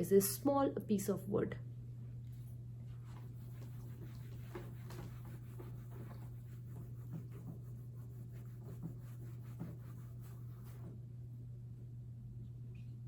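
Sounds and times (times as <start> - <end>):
steady low hum: 0.0 - 13.0
pen scratching while writing: 3.2 - 10.9.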